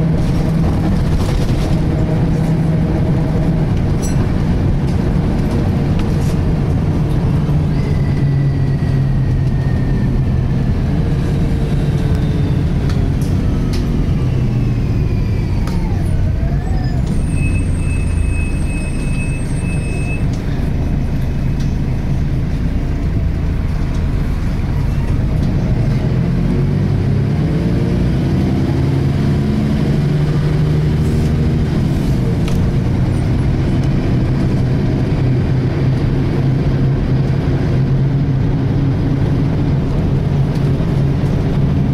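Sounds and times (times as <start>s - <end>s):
bus engine and road rumble: 0.0s - 41.9s.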